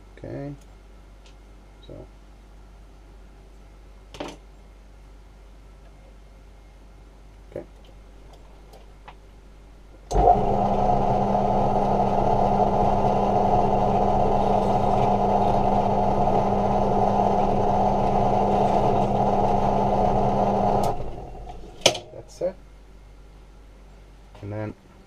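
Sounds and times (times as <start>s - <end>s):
electric drill boring plastic: 10.1s - 21.8s.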